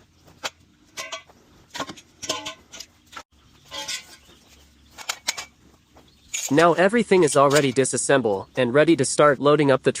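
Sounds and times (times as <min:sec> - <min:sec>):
hammer clanking on steel tube: 0:00.4 - 0:02.9.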